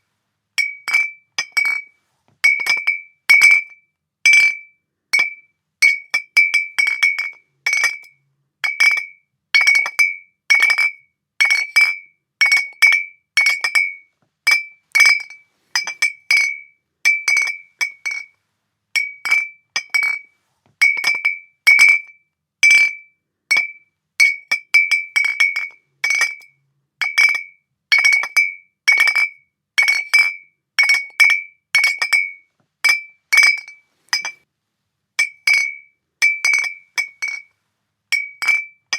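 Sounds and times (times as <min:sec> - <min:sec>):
glass bottles clinking: 0:00.6 - 0:03.7, 0:12.5 - 0:18.3, 0:19.0 - 0:20.2, 0:22.8 - 0:26.4, 0:27.0 - 0:34.4, 0:35.2 - 0:37.5, 0:38.1 - 0:38.8.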